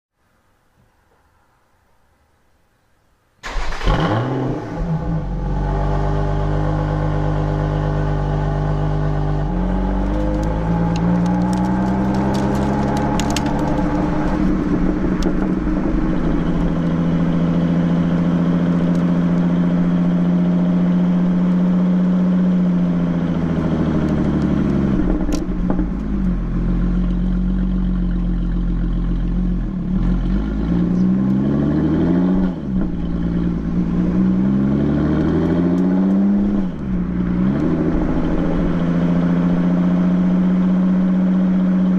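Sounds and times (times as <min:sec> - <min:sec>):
car engine revving: 0:03.4 - 0:41.9
exhaust pops: 0:09.8 - 0:17.4.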